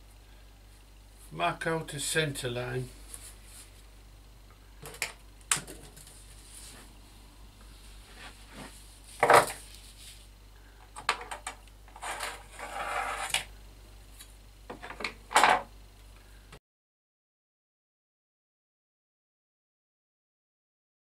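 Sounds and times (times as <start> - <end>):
rubbing scrape: 12.0 - 13.4.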